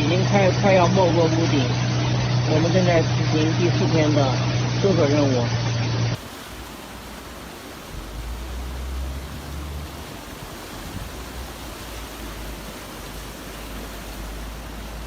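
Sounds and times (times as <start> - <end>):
low rumble: 0.0 - 6.2
floodwater rushing: 0.0 - 15.0.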